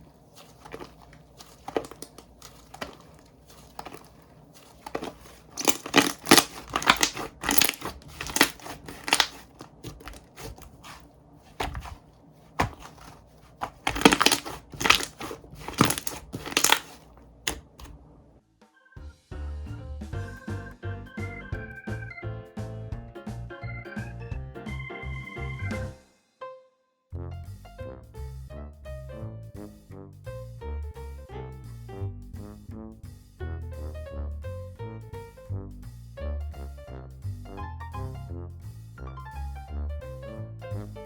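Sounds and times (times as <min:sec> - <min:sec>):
slime crackling and popping: 0:00.4 - 0:17.9.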